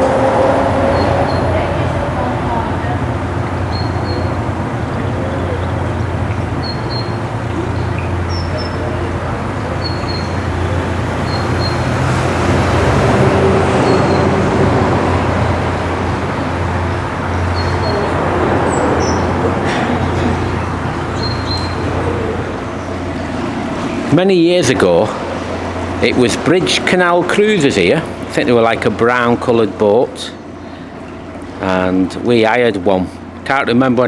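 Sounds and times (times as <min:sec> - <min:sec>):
boat diesel engine running: 0:00.0 - 0:34.0
bird chirps: 0:03.4 - 0:04.4, 0:05.3 - 0:11.9, 0:17.3 - 0:23.0.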